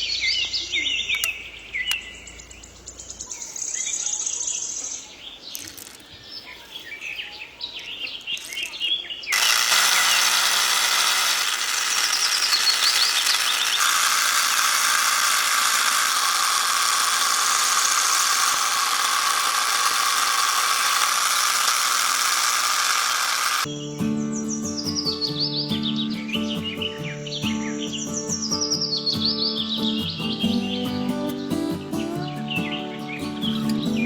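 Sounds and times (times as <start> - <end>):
birds chirping: 0.0 - 15.2, 23.6 - 34.0.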